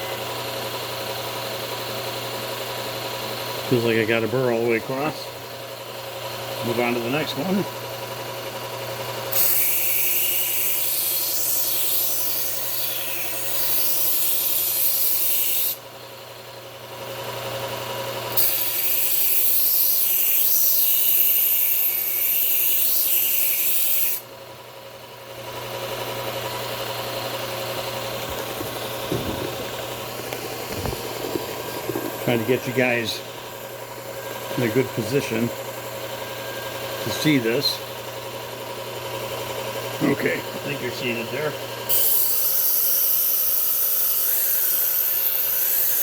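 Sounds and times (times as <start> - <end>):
knife grinding on belt sharpener: 9.3 - 15.8, 18.3 - 24.3, 25.9 - 37.8, 41.9 - 46.0
motor hum: 24.2 - 40.9.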